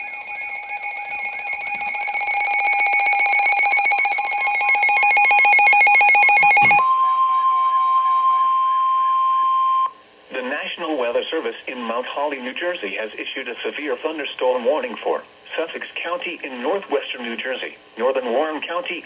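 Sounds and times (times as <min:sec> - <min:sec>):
pulsing electronic alarm beep: 0:00.0 - 0:09.9.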